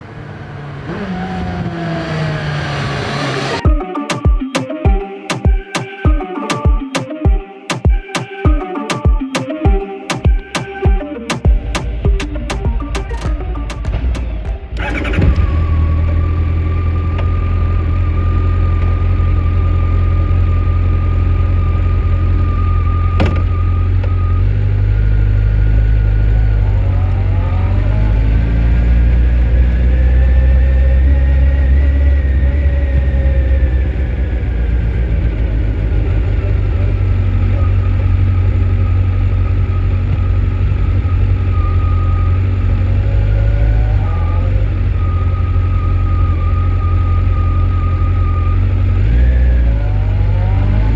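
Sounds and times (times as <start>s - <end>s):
motorcycle engine idling and revving: 0.0s - 3.6s, 9.7s - 50.9s
sharp click: 4.1s - 14.3s.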